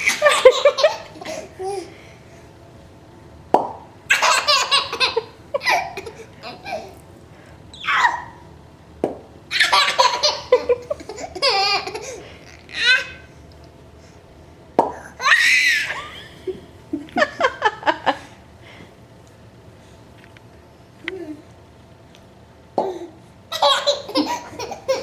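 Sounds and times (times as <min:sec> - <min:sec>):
baby laughing: 0:00.0 - 0:01.9, 0:04.1 - 0:07.0, 0:07.8 - 0:08.4, 0:09.5 - 0:13.3, 0:23.5 - 0:25.0.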